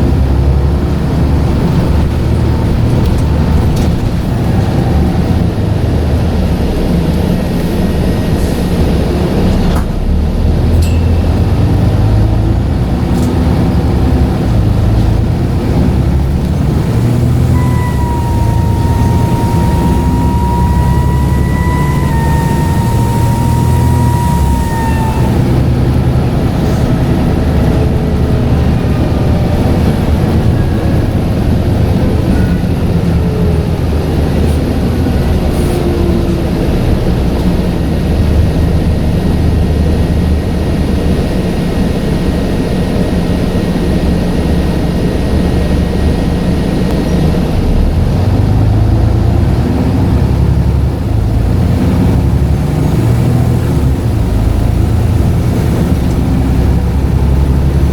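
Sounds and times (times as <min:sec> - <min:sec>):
bus engine rumble: 0:00.0 - 0:57.9
faint gliding whines: 0:10.6 - 0:38.2
whistle-like tone: 0:16.3 - 0:27.8.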